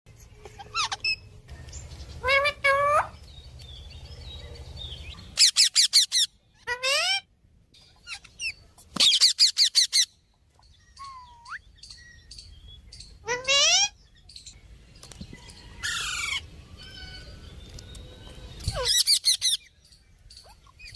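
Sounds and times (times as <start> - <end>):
high sweeping parrot chirps: 0.5 - 1.4, 5.0 - 14.6, 18.6 - 20.9
parrot squawks: 0.6 - 1.3, 5.4 - 7.3, 13.2 - 14.0.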